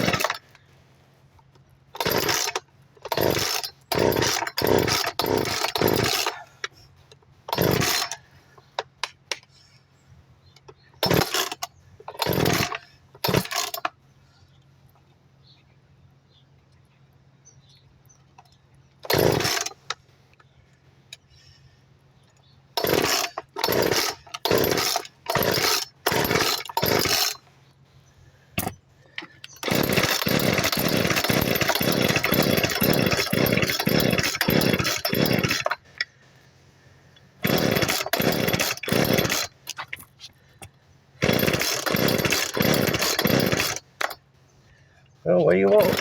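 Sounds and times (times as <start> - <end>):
chainsaw engine running roughly: 0.0 - 0.5, 2.0 - 6.5, 7.5 - 8.3, 11.0 - 13.8, 19.0 - 19.9, 22.8 - 27.4, 28.6 - 36.1, 37.4 - 39.8, 41.2 - 44.2, 45.5 - 46.0
starter cord pulls: 0.0 - 0.6, 1.4 - 9.5, 10.5 - 13.9, 18.3 - 20.5, 22.3 - 27.5, 28.6 - 36.1, 37.4 - 44.2, 45.5 - 46.0.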